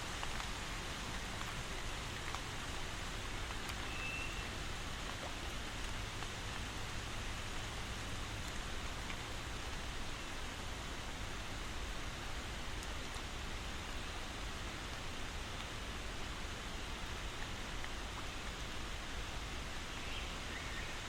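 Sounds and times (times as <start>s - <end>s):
steady rainfall: 0.0s - 21.0s.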